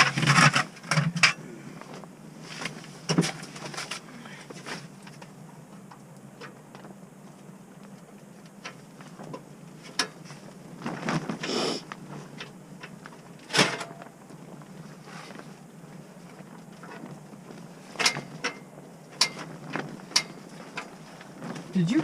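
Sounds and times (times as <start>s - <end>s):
rustling: 8.8s - 22.0s.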